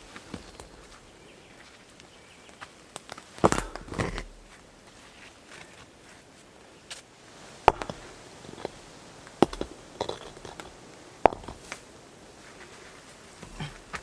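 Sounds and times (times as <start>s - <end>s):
stones clacking and scraping: 3.1s - 5.9s, 7.3s - 14.0s
heavy stones knocking together: 3.4s - 4.6s, 7.4s - 11.9s.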